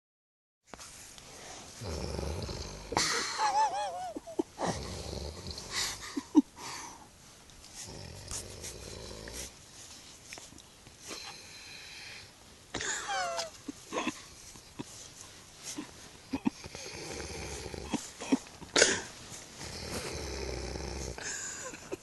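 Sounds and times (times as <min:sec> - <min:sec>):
low rattling snores: 0:01.4 - 0:03.4, 0:04.6 - 0:06.2, 0:07.8 - 0:09.6, 0:16.4 - 0:18.2, 0:18.8 - 0:21.8.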